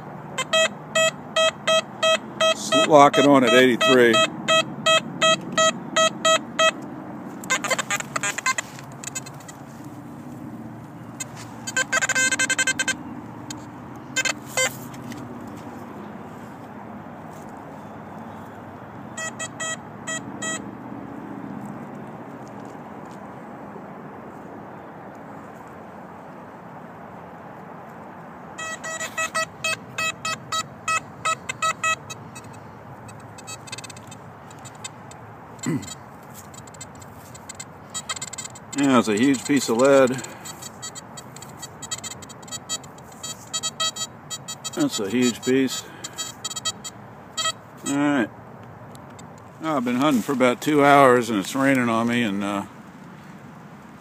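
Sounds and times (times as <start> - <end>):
metal detector chattering tones: 0.4 - 6.8, 7.4 - 9.6, 11.1 - 15.2, 19.1 - 20.6, 28.6 - 48.3
metal detector high beeps: 0.4 - 6.8, 7.4 - 9.6, 11.2 - 14.8, 19.1 - 20.6, 28.6 - 35.0, 35.6 - 48.2.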